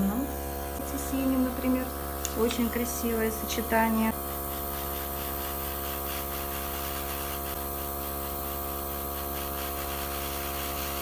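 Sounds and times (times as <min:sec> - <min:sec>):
airbrush compressor humming: 0:00.0 - 0:11.0
airbrush spraying hiss: 0:03.8 - 0:11.0.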